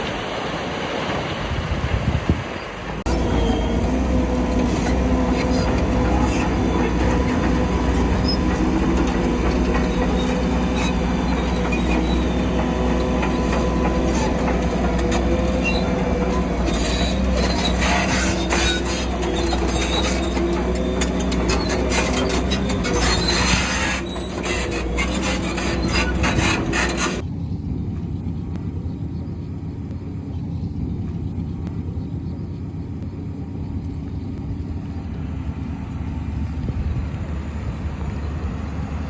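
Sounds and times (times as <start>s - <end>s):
diesel engine running: 0.0s - 39.0s
steel tracks squealing and clanking: 2.5s - 27.3s.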